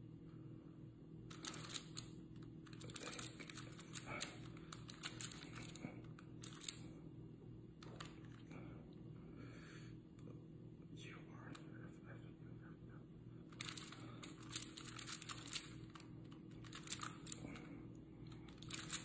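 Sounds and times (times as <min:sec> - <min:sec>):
faint steady hum: 0:00.0 - 0:19.0
puzzle cube clicking: 0:01.3 - 0:02.0.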